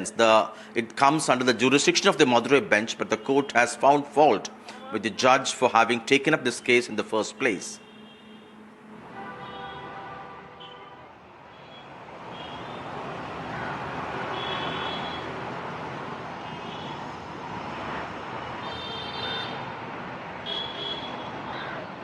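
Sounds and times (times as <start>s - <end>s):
rush of traffic: 0.0s - 22.0s
car horns: 2.6s - 5.3s, 6.3s - 15.5s, 16.4s - 17.0s, 18.4s - 19.7s, 20.4s - 21.5s.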